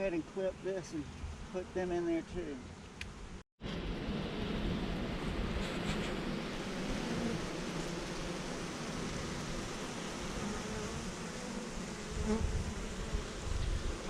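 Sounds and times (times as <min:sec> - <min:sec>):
bee swarm buzzing: 0:02.6 - 0:14.0.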